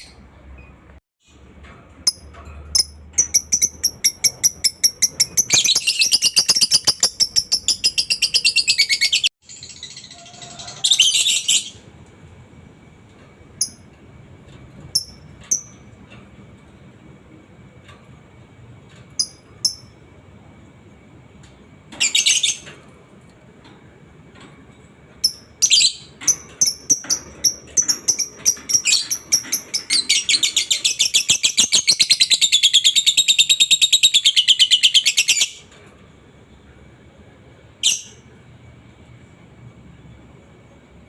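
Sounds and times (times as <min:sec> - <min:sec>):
lovebird chirping and trilling: 0:02.1 - 0:11.8, 0:25.3 - 0:35.7.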